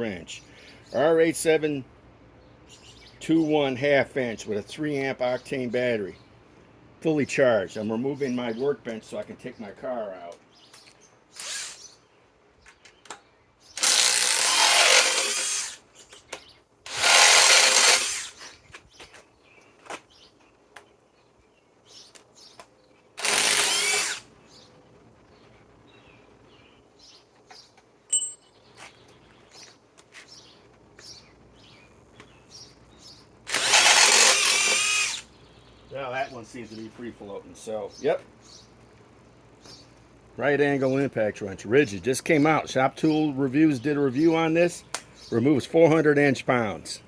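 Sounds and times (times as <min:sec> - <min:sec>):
impact wrench hammering: 0:28.1 - 0:28.4.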